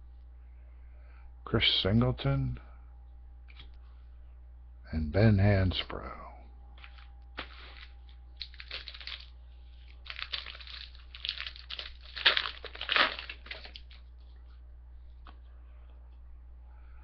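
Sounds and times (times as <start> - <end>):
low hum: 0.0 - 17.0
foil wrapper crinkling and tearing: 7.4 - 14.1.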